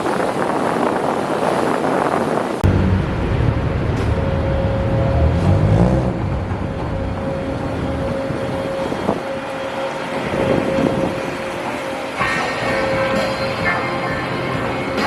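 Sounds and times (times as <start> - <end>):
vehicle engine droning: 2.6 - 9.2.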